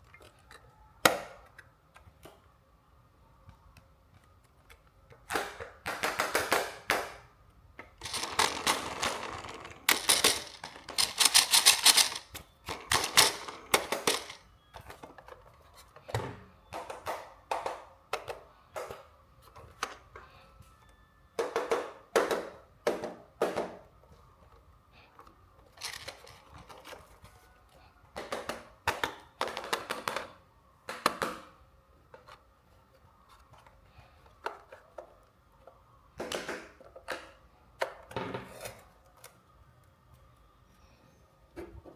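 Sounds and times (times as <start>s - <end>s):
packaging rustling and crinkling: 8.0s - 14.4s, 25.8s - 26.9s.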